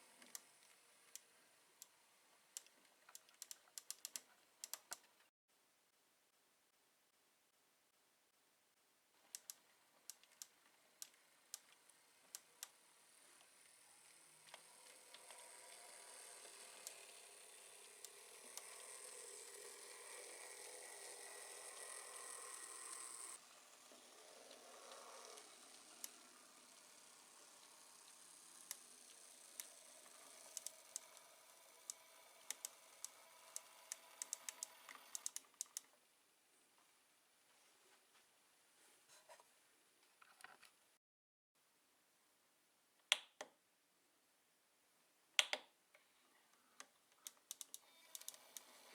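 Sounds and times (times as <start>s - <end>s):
model train motor whirring: 0.0s - 1.9s, 9.3s - 35.9s, 47.3s - 48.9s
faint sharp clicks: 9.3s - 12.8s.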